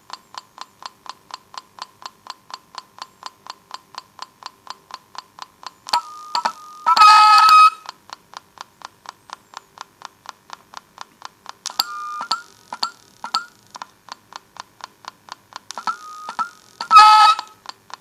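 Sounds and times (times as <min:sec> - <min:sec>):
electronic circuit ticking: 0:00.0 - 0:18.0
loud buzzing electronic tone: 0:06.0 - 0:07.8, 0:15.8 - 0:17.6
electronic beeping tones: 0:11.7 - 0:13.6, 0:15.8 - 0:17.5.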